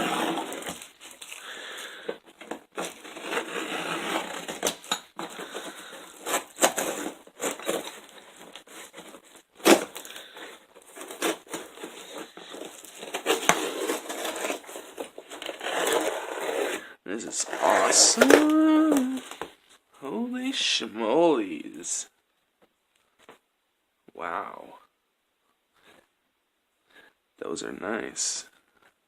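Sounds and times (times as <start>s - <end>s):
packing material crinkling: 0.0s - 16.8s, 17.4s - 19.6s.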